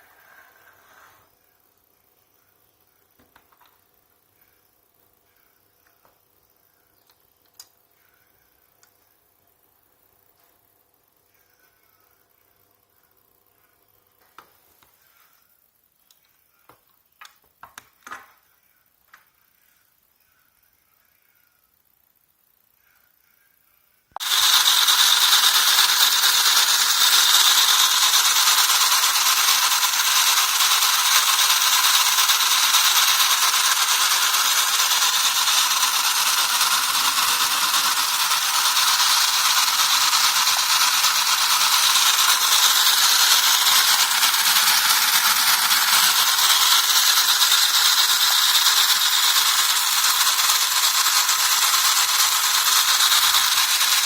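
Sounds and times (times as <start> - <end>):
toy electric motor whirring: 0.0 - 1.3, 24.2 - 54.0.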